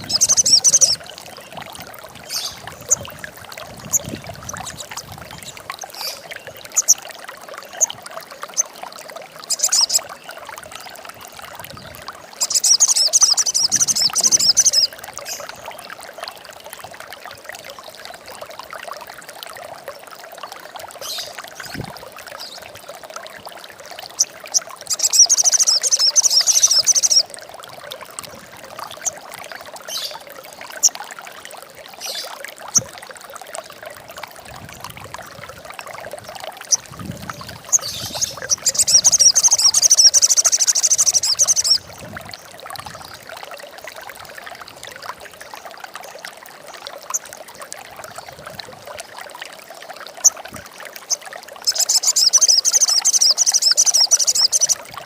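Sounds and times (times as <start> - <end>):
bird chattering trill: 0.0 - 1.0, 24.9 - 27.2, 37.7 - 41.8
trickling water: 0.0 - 55.0.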